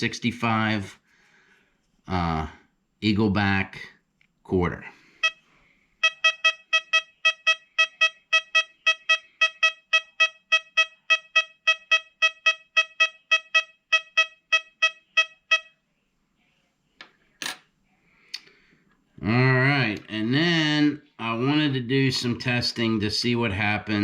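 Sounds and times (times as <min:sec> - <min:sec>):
metal detector beeps: 0:05.2 - 0:05.4, 0:06.0 - 0:15.7.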